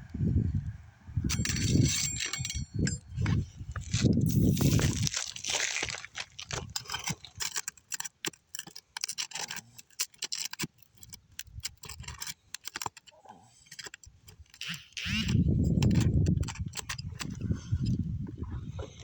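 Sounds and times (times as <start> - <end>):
clicks and scrapes on roof shingles: 1.3 - 19.0
scratchy rasp: 3.3 - 18.0.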